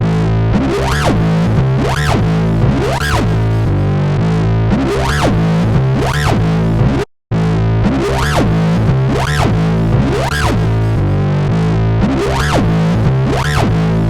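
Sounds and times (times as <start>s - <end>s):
distorted synth bass line: 0.0s - 14.0s.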